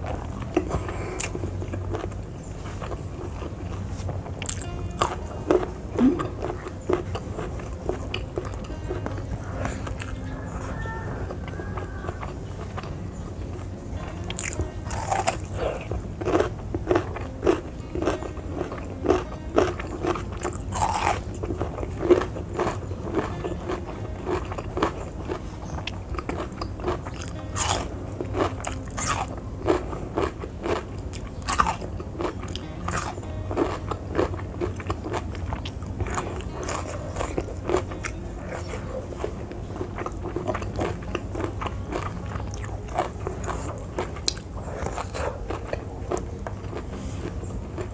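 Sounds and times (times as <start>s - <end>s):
person chewing crunchy vegetables: 0.0s - 47.9s.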